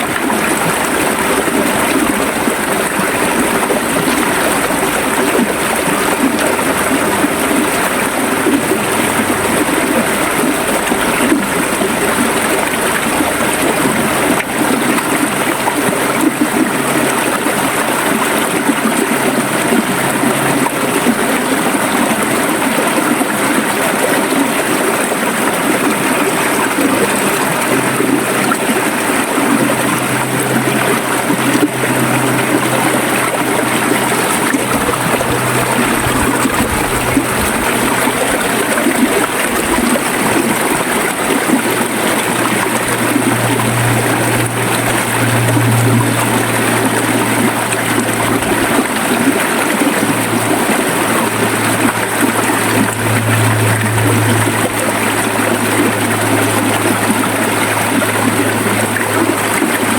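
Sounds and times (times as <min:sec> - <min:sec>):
river water flowing and gurgling: 0:00.0 - 0:59.9
low steady hum: 0:24.8 - 0:59.9.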